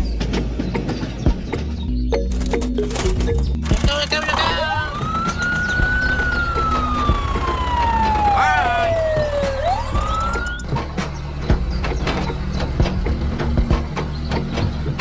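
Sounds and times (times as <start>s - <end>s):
siren-like whistling tone: 4.4s - 10.7s.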